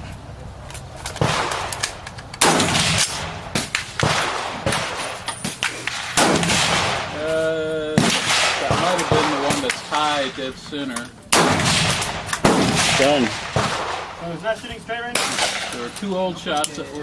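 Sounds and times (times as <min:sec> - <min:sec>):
rifle shots: 0:01.0 - 0:16.1
faint gunshot cracks: 0:02.4 - 0:05.0, 0:05.6 - 0:07.3, 0:08.0 - 0:10.3, 0:11.3 - 0:14.3, 0:15.2 - 0:15.9.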